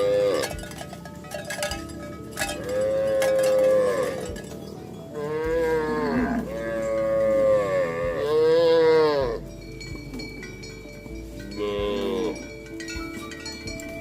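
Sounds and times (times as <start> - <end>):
cattle mooing: 0.0 - 0.6, 2.5 - 4.4, 5.2 - 9.5, 11.5 - 12.4.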